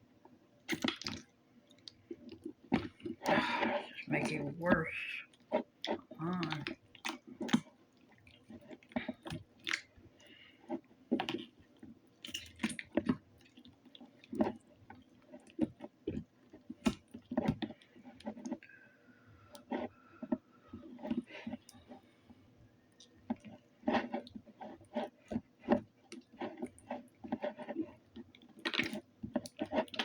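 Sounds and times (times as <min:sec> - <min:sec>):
slime squelching: 0:00.7 - 0:11.6.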